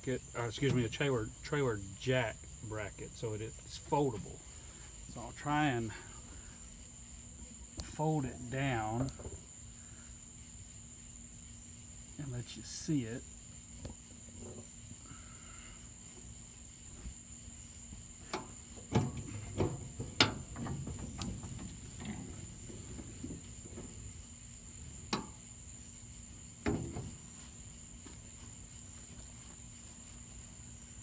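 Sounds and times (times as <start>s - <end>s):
cricket trill: 0.0s - 31.0s
metal bracket knocking and clunking: 18.2s - 24.2s, 24.8s - 25.4s, 26.6s - 27.5s.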